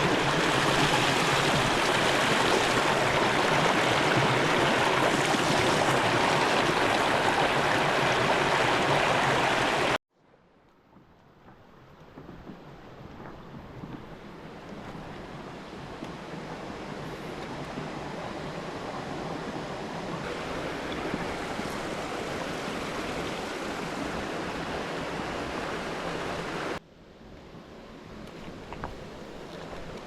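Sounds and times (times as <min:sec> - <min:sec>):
creek water rushing: 0:00.0 - 0:10.0, 0:14.4 - 0:26.8.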